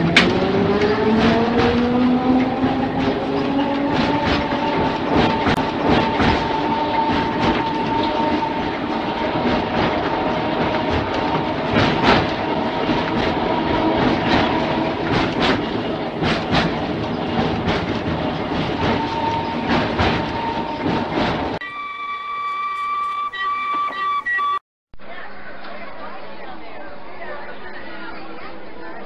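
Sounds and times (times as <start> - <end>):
wheels clicking over rail joints: 0.0 - 21.6
wheels rumbling on rails: 0.0 - 21.7
tram motor whine: 0.0 - 24.6.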